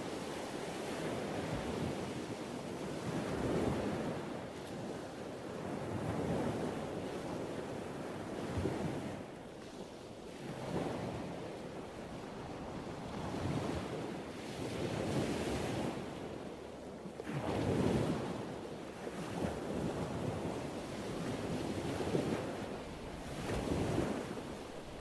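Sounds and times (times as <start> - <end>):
ocean waves breaking: 19.9 - 25.0.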